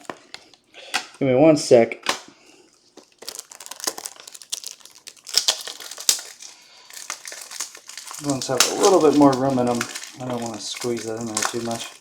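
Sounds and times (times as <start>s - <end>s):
plastic packaging crinkling: 2.6s - 12.0s.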